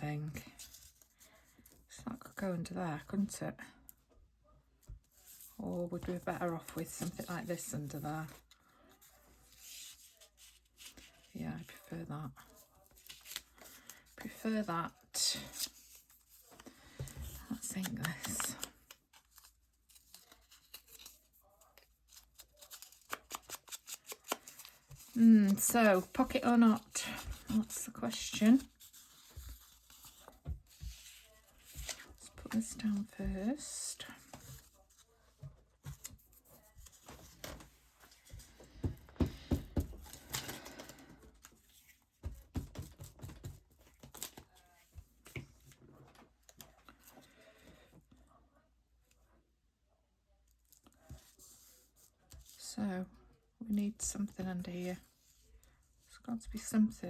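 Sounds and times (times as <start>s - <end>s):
paper rustling: 5.1s - 14.4s, 15.4s - 47.2s.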